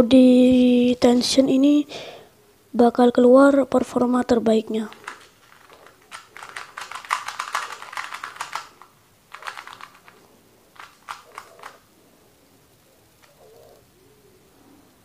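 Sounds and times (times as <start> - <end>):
plastic puzzle cube clicking: 4.8 - 11.9.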